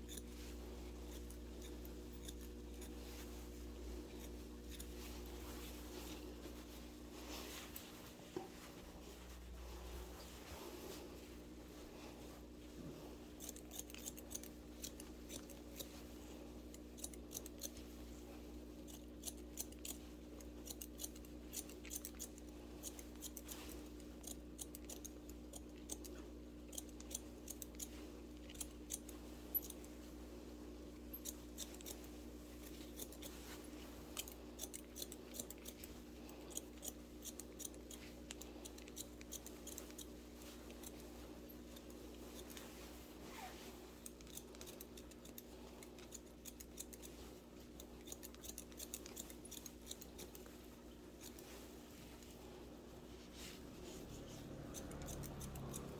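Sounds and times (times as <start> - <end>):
scissors snipping hair: 0.0 - 5.4, 13.2 - 30.1, 31.0 - 52.4, 53.8 - 55.9
steady low hum: 0.0 - 55.9.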